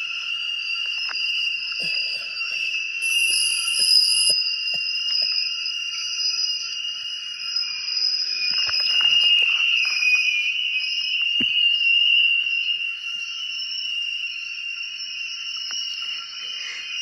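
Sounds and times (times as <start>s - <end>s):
high-pitched buzzing drone: 0.0s - 10.8s.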